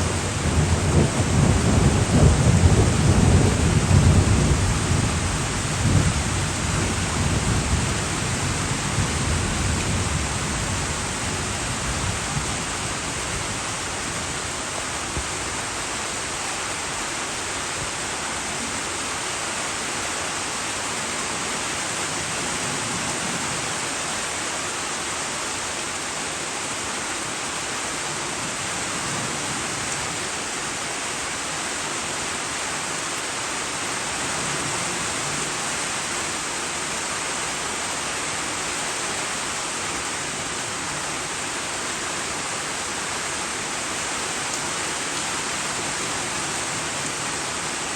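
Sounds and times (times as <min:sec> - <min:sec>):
low thunder rumble: 0:00.0 - 0:13.6
steady rain falling: 0:00.0 - 0:47.9.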